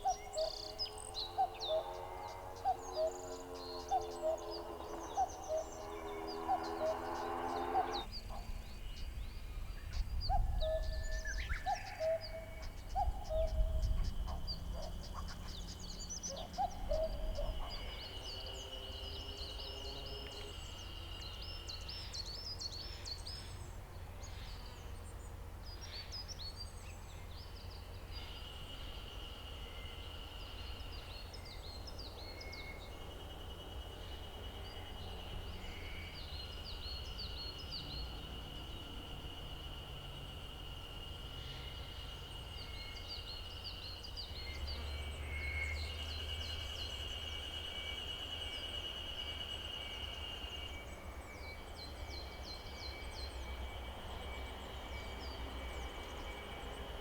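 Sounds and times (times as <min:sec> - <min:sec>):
birds chirping: 0:00.0 - 0:09.2
low hooting notes: 0:00.7 - 0:08.1.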